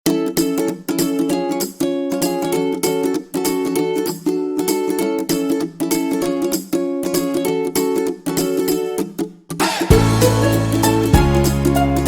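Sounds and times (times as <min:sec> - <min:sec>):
plucked-string tune: 0:00.0 - 0:12.0
bass line: 0:09.9 - 0:12.0.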